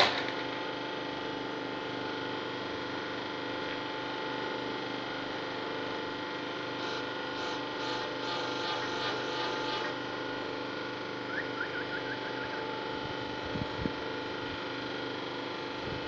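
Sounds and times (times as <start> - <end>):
machine hum: 4.1 - 16.0.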